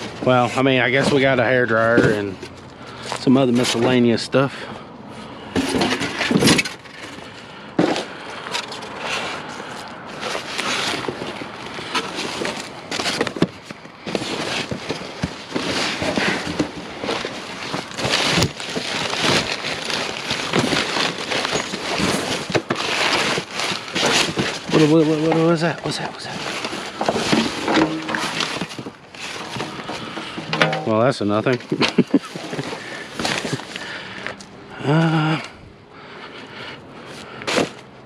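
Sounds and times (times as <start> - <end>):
plastic rustling: 0.0 - 4.2, 5.5 - 34.4
junk clattering and knocking: 5.5 - 8.1, 10.2 - 33.7.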